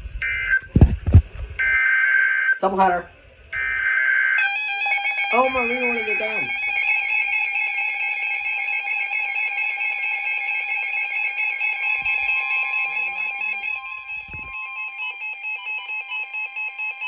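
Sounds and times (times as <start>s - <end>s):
dull low thumps: 0.0s - 1.8s
higher electronic tone: 3.5s - 8.8s
steady electronic alert tone: 4.4s - 8.8s.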